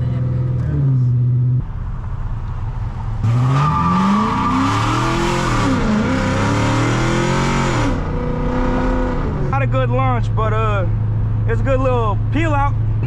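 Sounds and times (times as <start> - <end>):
car engine revving hard: 3.2 - 9.5.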